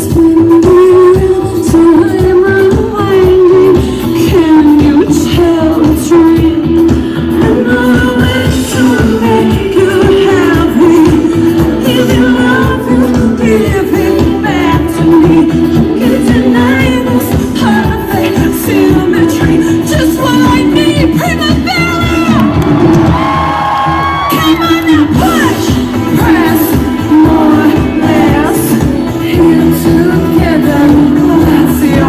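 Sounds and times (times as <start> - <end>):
band with steady beat: 0.0 - 32.0
female singer: 0.0 - 32.0.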